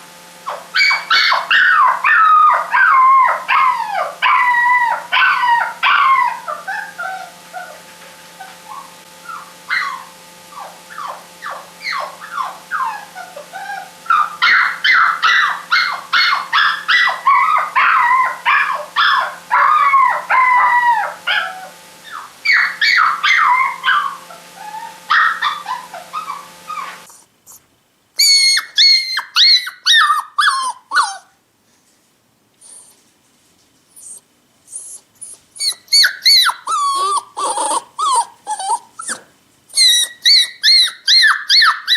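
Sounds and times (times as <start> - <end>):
puppies whimpering and whining: 0.5 - 31.4, 32.6 - 33.0, 34.0 - 41.9.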